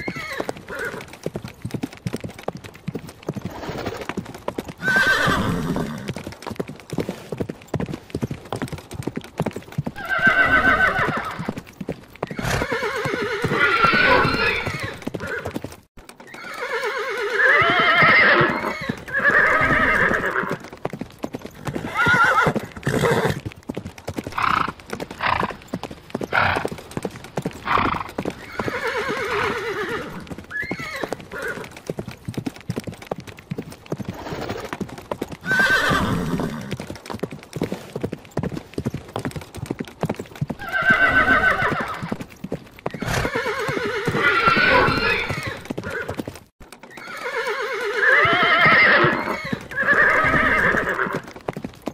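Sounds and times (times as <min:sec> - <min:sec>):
horses whinnying: 0:00.0 - 0:01.2, 0:03.3 - 0:06.3, 0:09.8 - 0:23.5, 0:24.3 - 0:32.0, 0:33.9 - 0:36.9, 0:40.4 - 0:51.4
hooves clip-clopping: 0:00.0 - 0:51.9.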